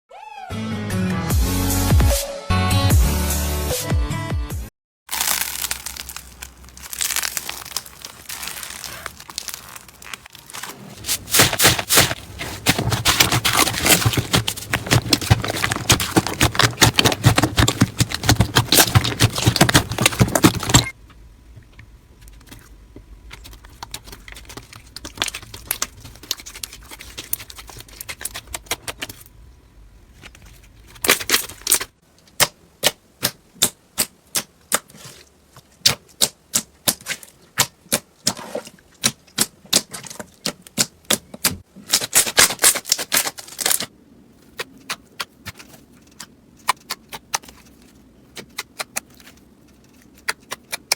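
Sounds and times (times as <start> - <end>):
slime crackling and popping: 5.1 - 21.0, 23.3 - 29.2.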